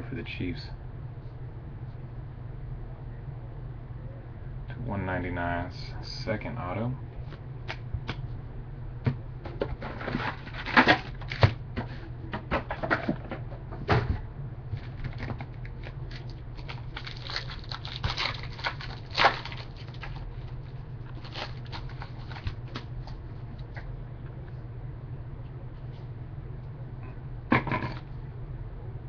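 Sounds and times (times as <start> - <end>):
steady low hum: 0.0 - 29.0.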